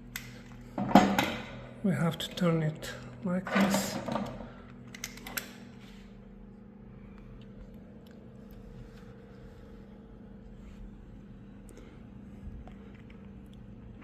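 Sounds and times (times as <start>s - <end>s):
faint steady hum: 0.0s - 14.0s
lock parts clicking: 4.9s - 5.6s.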